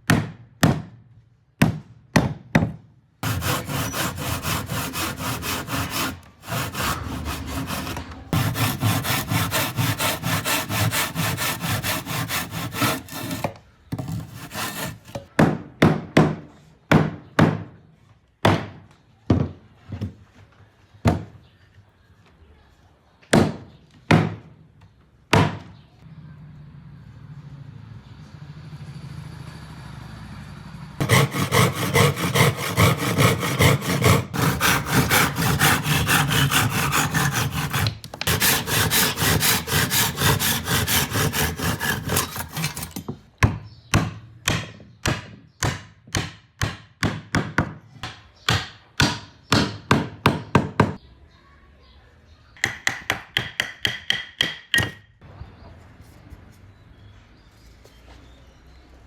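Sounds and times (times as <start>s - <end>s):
hammering on wood: 0.0s - 1.0s, 1.6s - 17.8s, 18.4s - 19.6s, 23.3s - 24.5s, 25.3s - 25.7s, 31.0s - 42.3s, 43.4s - 51.0s, 52.6s - 55.0s.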